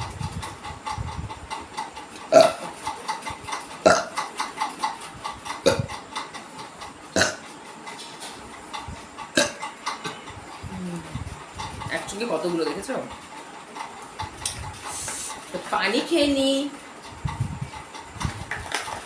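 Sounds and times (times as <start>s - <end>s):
woman belching: 2.3s - 2.6s, 3.9s - 4.1s, 7.2s - 7.4s.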